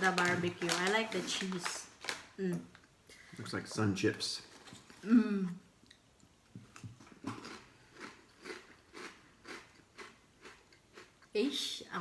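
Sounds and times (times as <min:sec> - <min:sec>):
chips being chewed: 0:07.2 - 0:11.1.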